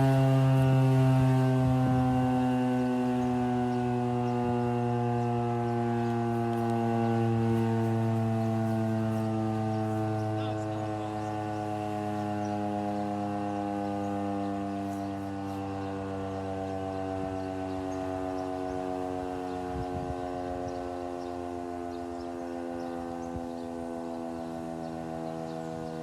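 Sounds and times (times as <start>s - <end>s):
warning siren steady tone: 0.0s - 26.0s.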